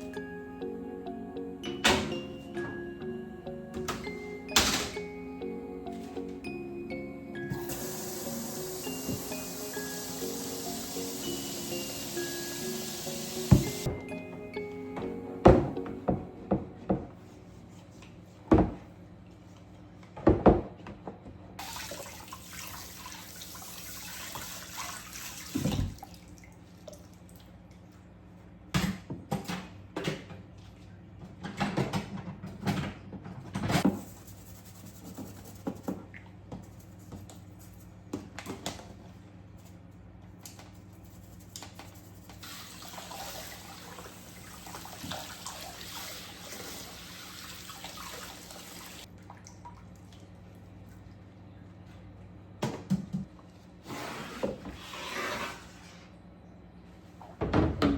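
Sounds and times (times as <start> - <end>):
tap running into a sink: 7.5 - 9.4, 13.0 - 13.9.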